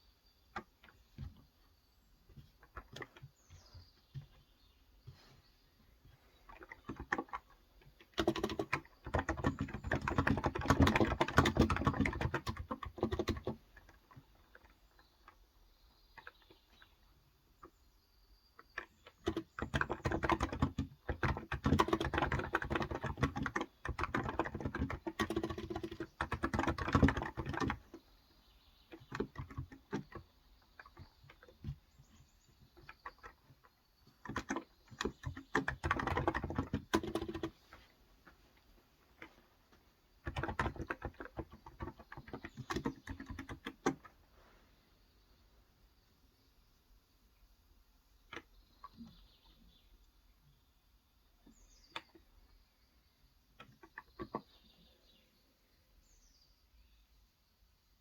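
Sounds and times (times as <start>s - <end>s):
keyboard typing: 6.6s - 13.6s, 18.8s - 28.0s, 28.9s - 30.2s, 32.7s - 37.6s, 40.2s - 44.1s.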